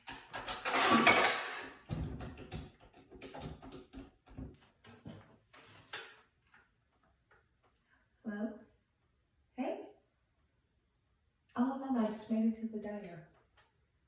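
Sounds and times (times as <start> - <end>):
hard objects clicking and knocking: 0.0 - 4.6.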